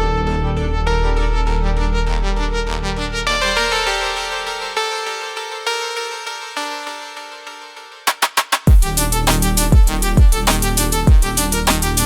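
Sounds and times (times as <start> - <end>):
sustained layered melodic tones: 0.0 - 8.0
deep kick drum beats: 8.7 - 12.0.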